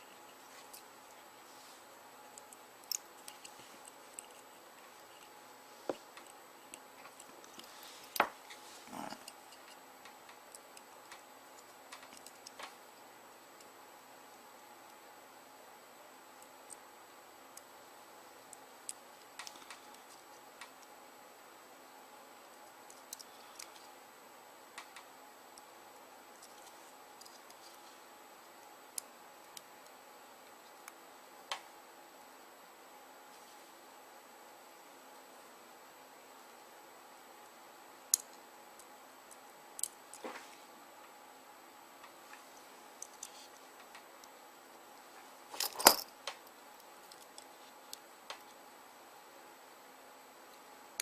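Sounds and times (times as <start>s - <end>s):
small parts clicking and tapping: 2.3s - 8.4s, 9.2s - 12.8s, 18.5s - 20.9s, 22.6s - 23.9s, 26.3s - 27.8s, 38.1s - 40.3s, 43.0s - 44.3s, 45.6s - 48.6s.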